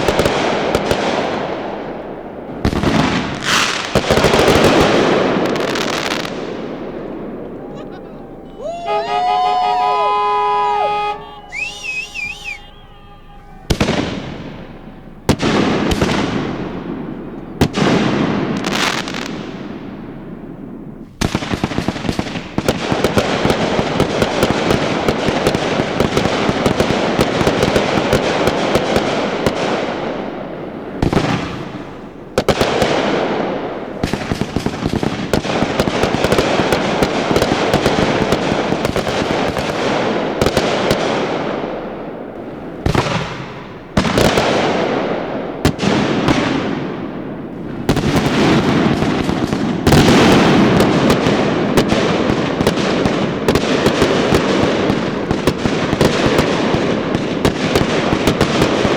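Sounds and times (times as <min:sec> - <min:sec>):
firework booms: 0:00.0 - 0:58.9
fireworks crackling and popping: 0:00.0 - 0:58.9.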